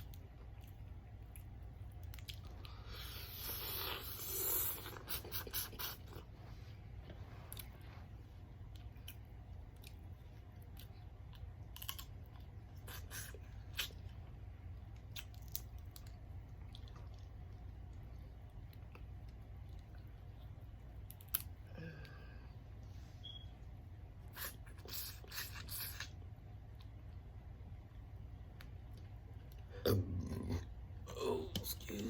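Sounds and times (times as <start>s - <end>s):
chewing with crunches: 0.0s - 21.7s, 24.2s - 27.3s.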